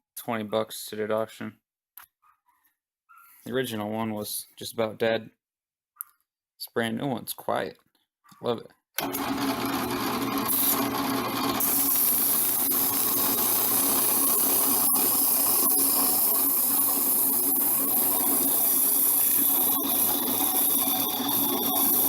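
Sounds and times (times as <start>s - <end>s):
drill press motor running: 9.0s - 22.0s.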